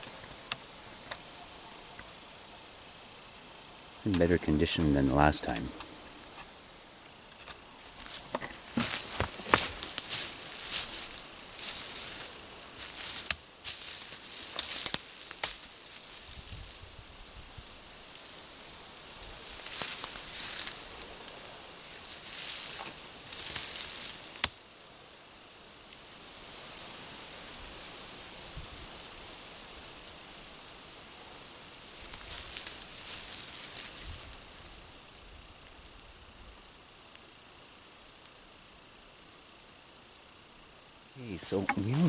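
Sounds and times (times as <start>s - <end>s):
rustling: 7.3s - 25.0s, 31.5s - 36.0s.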